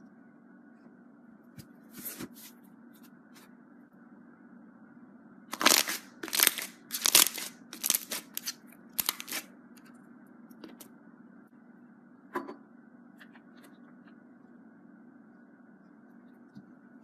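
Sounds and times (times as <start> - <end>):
faint steady hum: 0.0 - 17.0
slime squelching: 5.5 - 9.4.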